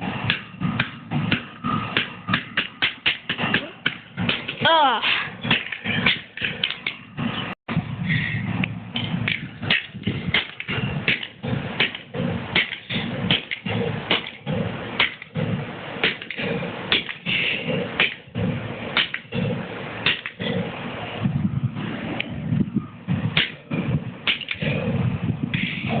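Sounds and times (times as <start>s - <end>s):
hard blows smashing plastic clock: 9.2s - 15.4s, 23.4s - 24.6s.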